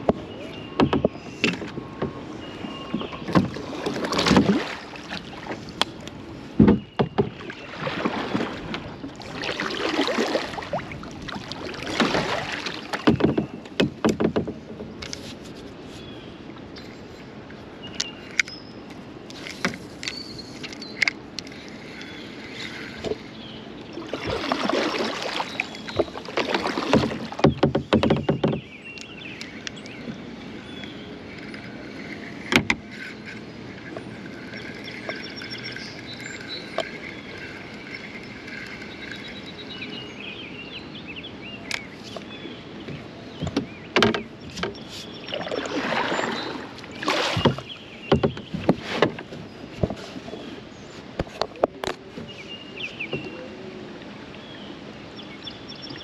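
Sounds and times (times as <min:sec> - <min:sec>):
paddle strokes splashing water: 0:00.0 - 0:18.4, 0:19.2 - 0:40.7, 0:41.4 - 0:54.7
sharp knocks: 0:26.8 - 0:28.6.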